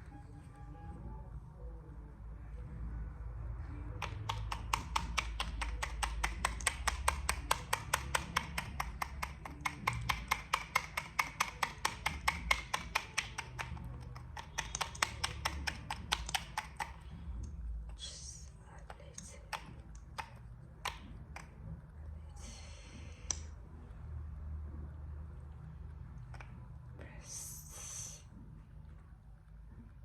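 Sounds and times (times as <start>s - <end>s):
rapid tapping clicks: 3.9s - 18.0s, 18.8s - 21.8s.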